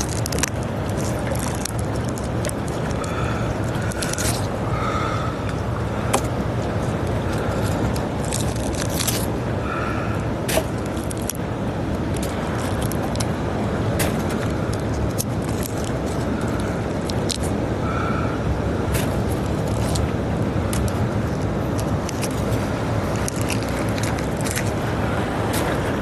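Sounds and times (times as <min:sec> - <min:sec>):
barnacles scraped off rocks: 0:00.0 - 0:04.8, 0:06.1 - 0:09.3, 0:18.9 - 0:24.8
strong sea wind: 0:00.0 - 0:26.0.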